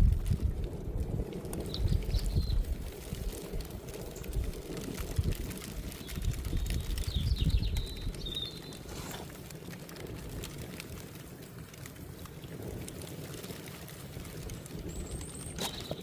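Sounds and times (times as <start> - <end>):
wind buffeting microphone: 0.0 - 16.0
bird chirping: 6.0 - 9.2.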